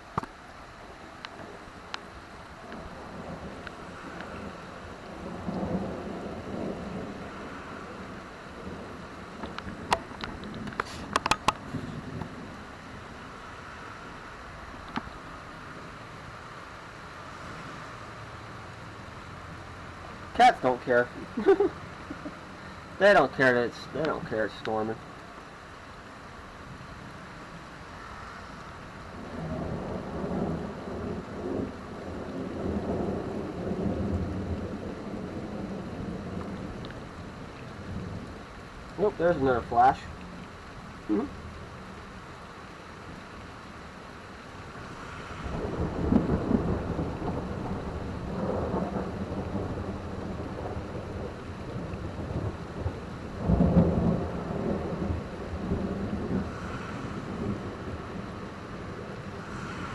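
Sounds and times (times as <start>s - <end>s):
steady rain: 0.0s - 59.9s
rolling thunder: 2.7s - 13.1s, 29.1s - 40.2s, 44.7s - 59.9s.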